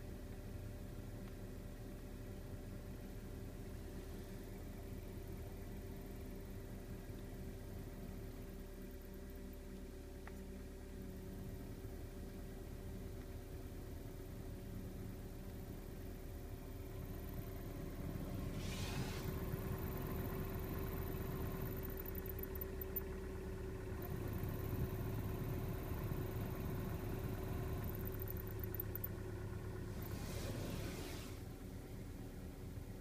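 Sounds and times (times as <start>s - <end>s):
heater blower fan whistling: 17.2s - 23.2s, 24.0s - 31.6s
short rush of air: 18.4s - 19.6s, 29.9s - 31.5s.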